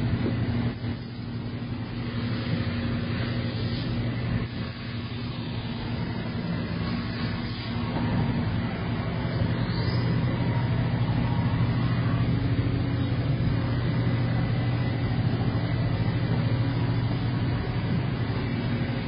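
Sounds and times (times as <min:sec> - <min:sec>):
faint steady whines: 0:00.0 - 0:19.0
milling machine humming: 0:00.0 - 0:19.0.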